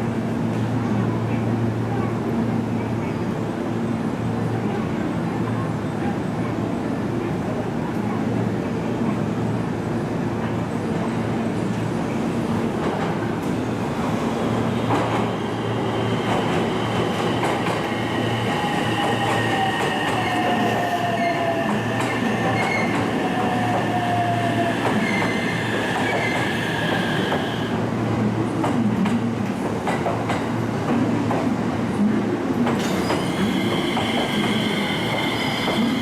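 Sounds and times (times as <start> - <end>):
train running: 10.4 - 36.0
train wheel squeal: 32.8 - 36.0.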